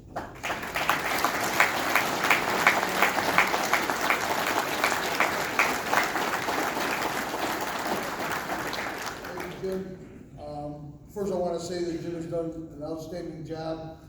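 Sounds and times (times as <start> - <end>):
audience applauding: 0.0 - 9.9.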